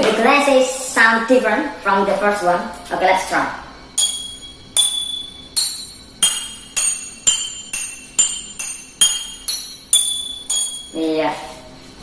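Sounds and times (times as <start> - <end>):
water-filled glasses ringing: 4.0 - 11.0.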